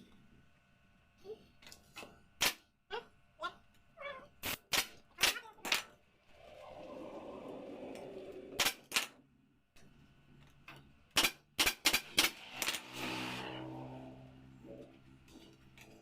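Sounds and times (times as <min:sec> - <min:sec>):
low hum: 0:06.1 - 0:10.4.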